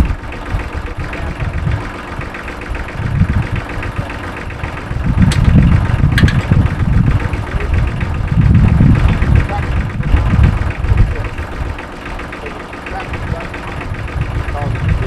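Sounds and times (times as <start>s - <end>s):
tractor engine idling: 0.0s - 15.0s
short metallic clicks: 5.3s - 6.7s.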